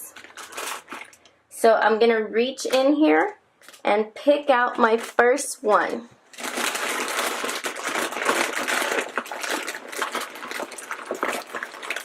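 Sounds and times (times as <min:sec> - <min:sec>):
plastic packets crinkling: 0:00.0 - 0:01.3, 0:03.6 - 0:03.8, 0:06.3 - 0:12.0.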